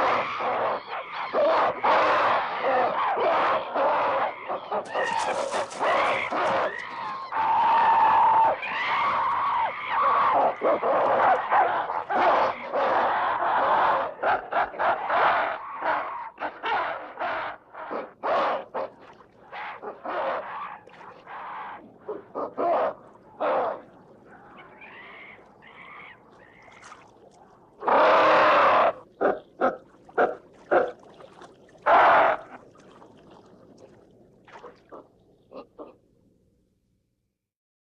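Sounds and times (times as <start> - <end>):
ape screams and shrieks: 0.0 - 17.3, 27.8 - 29.0.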